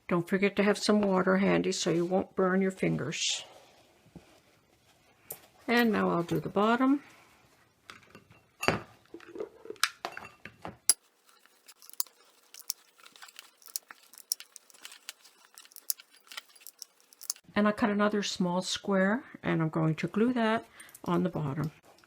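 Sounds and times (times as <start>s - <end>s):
faint small clicks and crackles: 10.9s - 17.4s.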